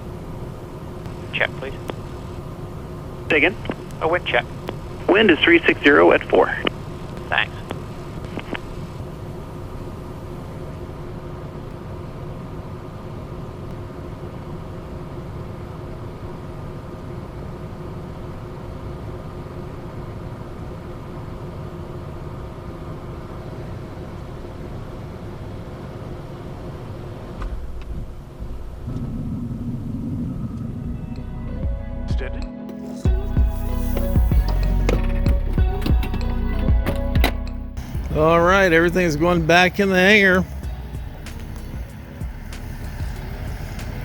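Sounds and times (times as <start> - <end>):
jet cockpit rumble and hum: 0.0 - 44.0.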